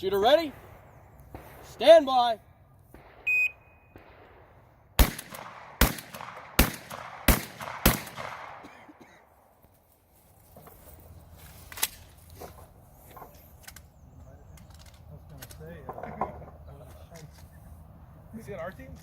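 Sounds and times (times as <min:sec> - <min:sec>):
shotgun shots with echo: 0:02.9 - 0:08.8.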